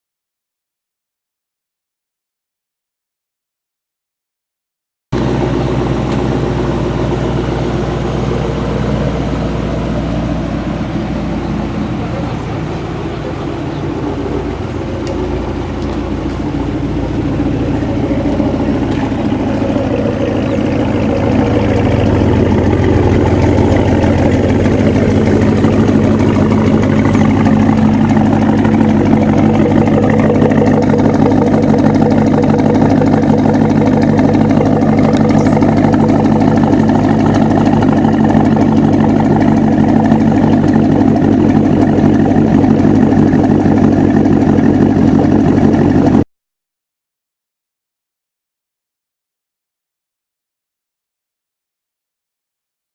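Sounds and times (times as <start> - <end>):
car engine idling: 5.2 - 46.2.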